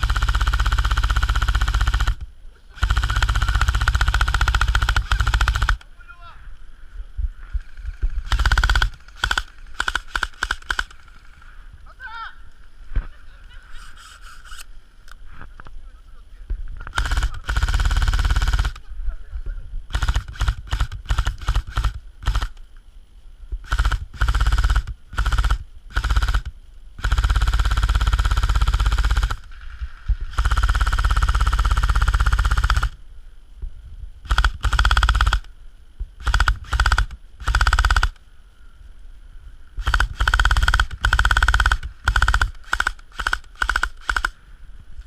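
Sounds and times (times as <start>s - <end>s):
airsoft rifle firing full auto: 0.0s - 5.9s, 7.6s - 11.3s, 16.9s - 18.8s, 19.9s - 22.6s, 23.6s - 29.7s, 30.3s - 33.0s, 34.2s - 35.5s, 36.2s - 38.2s, 39.8s - 44.4s.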